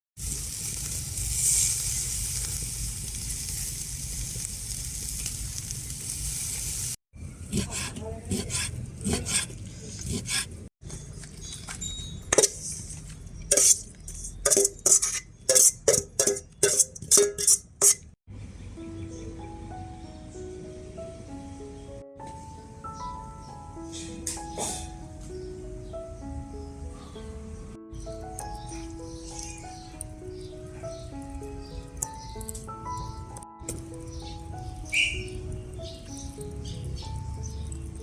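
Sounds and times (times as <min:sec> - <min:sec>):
pork sizzling: 0:00.2 - 0:10.6, 0:12.3 - 0:18.2, 0:28.0 - 0:38.0
knocks and clinks of food preparation: 0:10.1 - 0:18.2.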